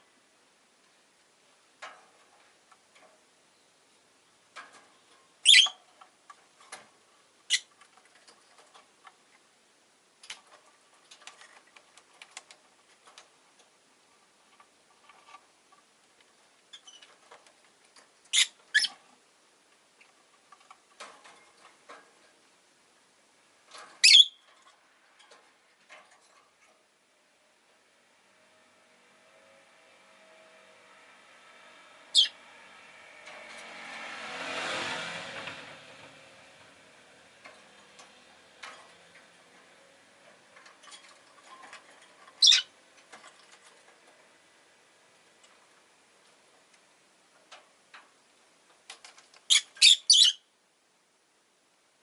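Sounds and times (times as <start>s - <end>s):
lovebird chirping: 5.4s - 5.8s, 24.0s - 24.4s, 32.1s - 32.3s, 42.4s - 42.7s, 49.5s - 50.4s.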